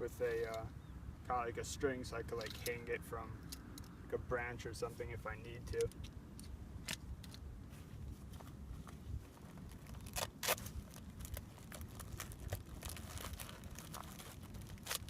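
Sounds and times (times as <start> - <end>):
packaging rustling and crinkling: 9.3 - 15.0
sharp crackles: 9.7 - 15.0.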